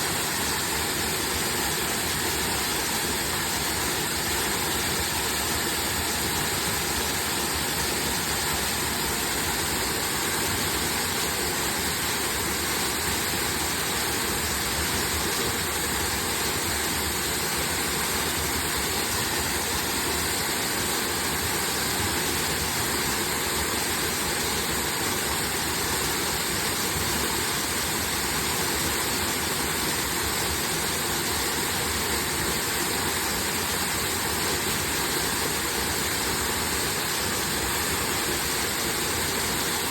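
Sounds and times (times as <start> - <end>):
waterfall roaring: 0.0 - 39.9.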